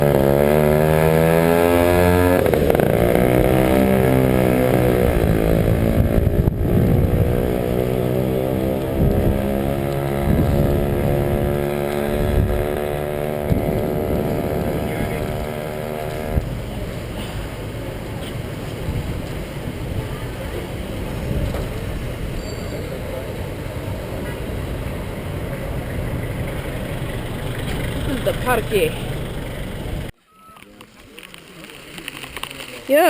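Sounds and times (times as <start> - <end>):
vehicle engine running: 24.9 - 30.1.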